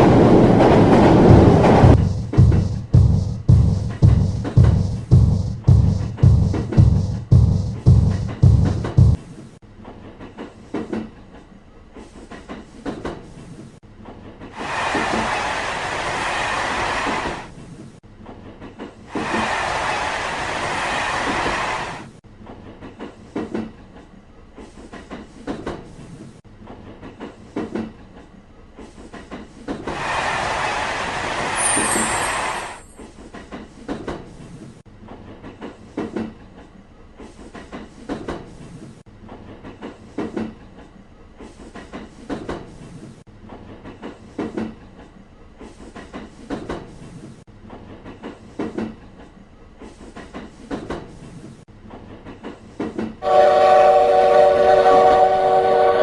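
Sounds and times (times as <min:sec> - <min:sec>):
train rushing past: 0:00.0 - 0:09.2, 0:14.4 - 0:17.7, 0:19.0 - 0:22.2, 0:29.8 - 0:33.0, 0:53.2 - 0:56.0
train wheels clacking on rails: 0:00.0 - 0:09.2, 0:14.1 - 0:17.6, 0:18.3 - 0:55.3.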